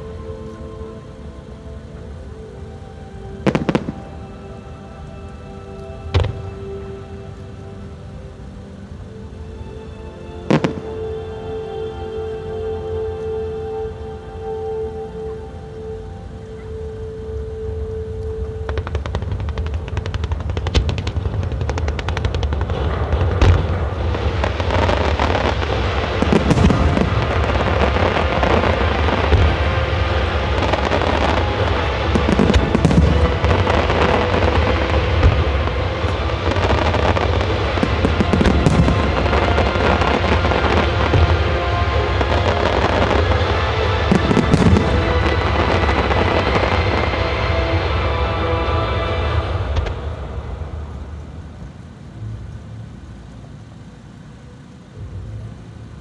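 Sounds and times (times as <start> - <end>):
music: 0.0 - 56.0
fireworks crackling and popping: 3.3 - 4.4, 10.4 - 11.2, 18.0 - 51.9
heavy firework booms: 30.4 - 47.1.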